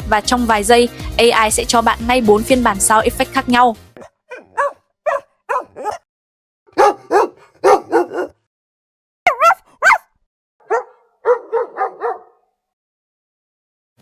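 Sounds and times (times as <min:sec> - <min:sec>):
dog barking: 0:04.0 - 0:06.1, 0:06.7 - 0:08.5, 0:09.3 - 0:12.6.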